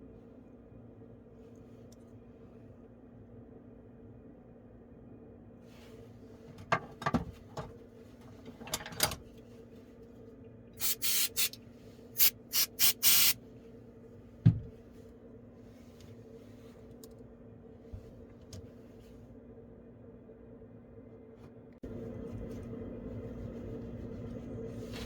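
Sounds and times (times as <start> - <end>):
hissing spray bursts: 10.8 - 11.5, 12.2 - 13.4.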